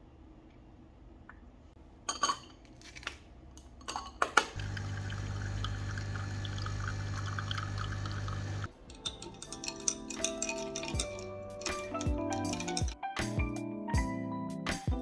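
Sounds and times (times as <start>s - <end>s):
coffee machine pump hum: 4.5s - 8.7s
liquid pouring: 4.5s - 8.7s.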